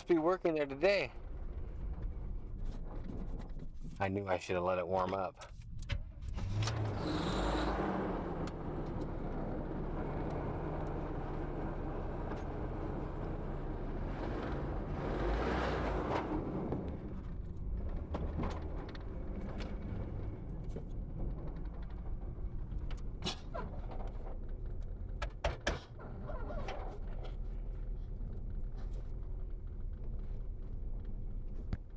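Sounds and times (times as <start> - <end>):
car engine running: 5.5 - 31.9
sharp clicks and knocks: 16.2 - 26.0.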